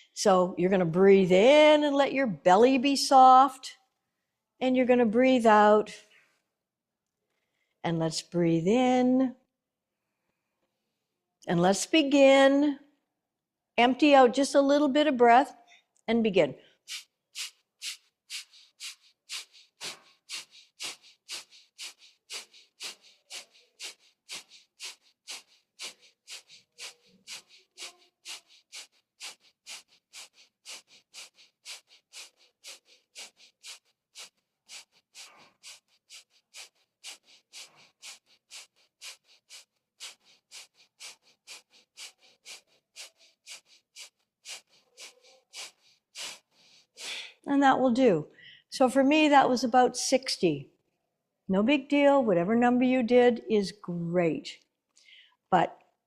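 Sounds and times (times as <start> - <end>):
forceful breathing through nose: 16.6 - 47.4.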